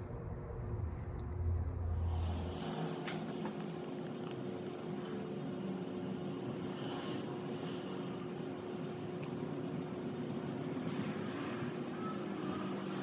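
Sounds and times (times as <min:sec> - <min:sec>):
low rumble: 0:00.0 - 0:03.0
machine hum with constant tone: 0:00.0 - 0:13.0.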